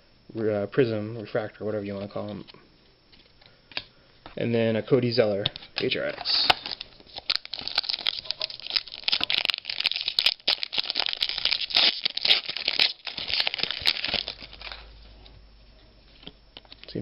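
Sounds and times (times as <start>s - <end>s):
wrapper crinkling and tearing: 6.5s - 15.0s.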